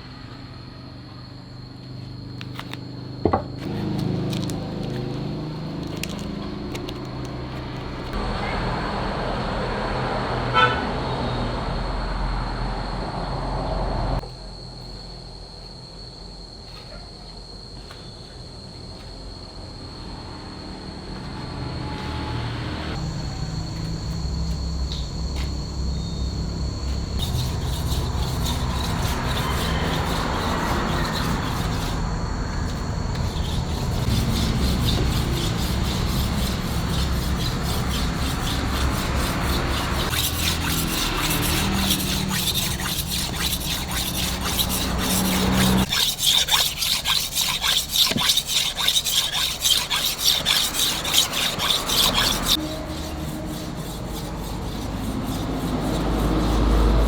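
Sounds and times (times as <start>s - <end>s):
knife sharpening rasping strokes: 27.2s - 32.0s, 32.6s - 56.8s.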